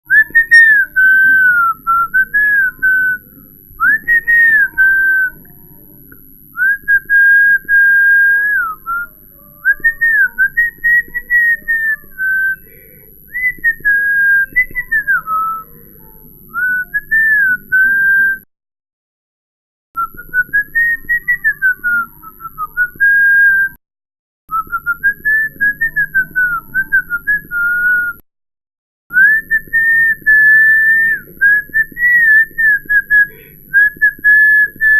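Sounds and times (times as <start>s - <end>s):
man whistling a tune: 0.1s - 3.2s, 3.8s - 5.3s, 6.6s - 9.1s, 9.7s - 12.7s, 13.3s - 15.7s, 16.6s - 18.5s, 20.0s - 23.8s, 24.5s - 28.2s, 29.1s - 34.9s.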